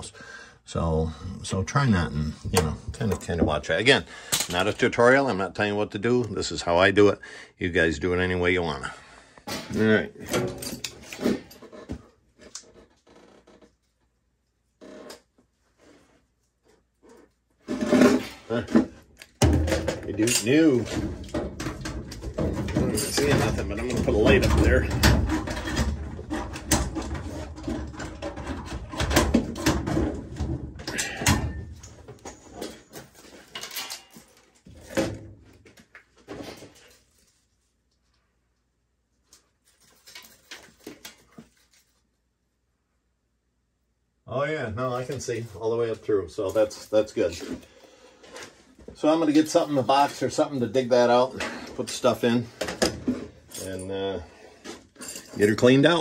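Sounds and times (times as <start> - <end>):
tools and parts clattering: 9.4 - 13.0, 17.0 - 37.5, 39.3 - 42.0, 49.3 - 56.0.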